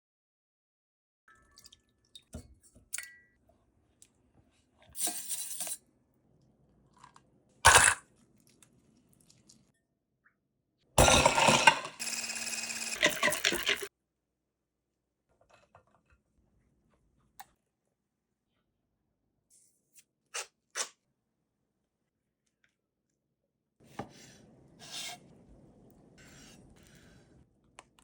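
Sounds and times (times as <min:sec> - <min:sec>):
utensils clicking and clinking: 0:11.0 - 0:13.9.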